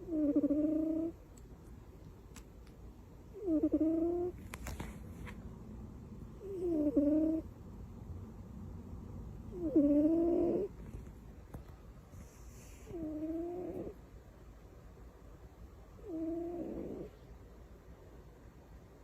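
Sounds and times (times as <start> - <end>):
cat snoring: 0.0 - 1.2, 3.3 - 4.4, 6.4 - 7.4, 9.5 - 10.8, 12.2 - 14.0, 16.0 - 17.2.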